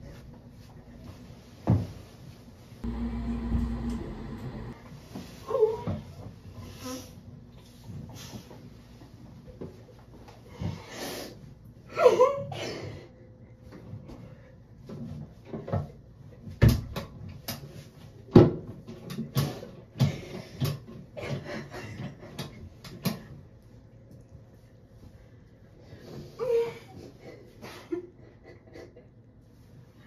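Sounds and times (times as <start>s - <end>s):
short sliding pitched sound: 2.8s - 4.8s.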